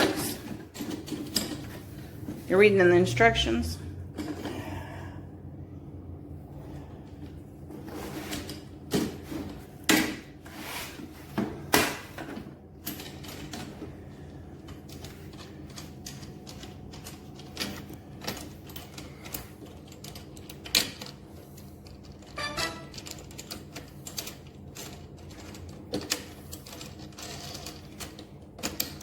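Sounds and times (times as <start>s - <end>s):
plastic parts clicking and rattling: 0.0s - 1.9s, 14.6s - 29.0s
faint steady hum: 0.0s - 29.0s.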